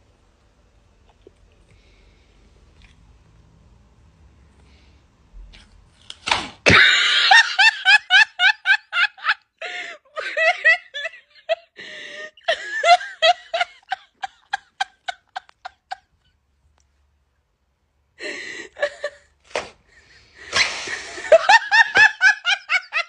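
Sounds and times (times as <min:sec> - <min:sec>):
person laughing: 0:06.7 - 0:16.2, 0:18.2 - 0:19.3, 0:20.4 - 0:23.0.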